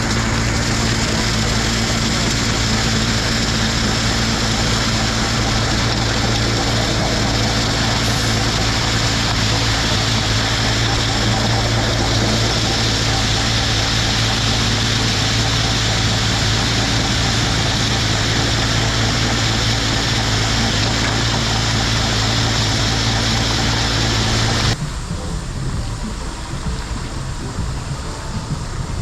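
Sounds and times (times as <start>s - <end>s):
heavy engine humming: 0.0s - 29.0s.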